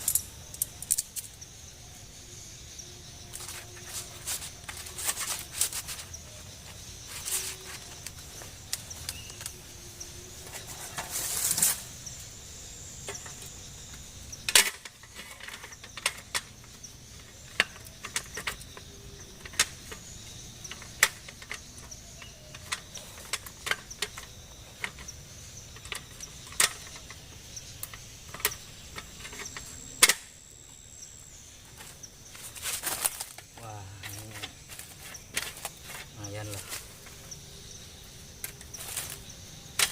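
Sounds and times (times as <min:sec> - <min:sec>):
camping gear clicking and knocking: 0:03.2 - 0:30.3, 0:30.9 - 0:39.9
rustling: 0:03.3 - 0:12.4, 0:31.6 - 0:37.4.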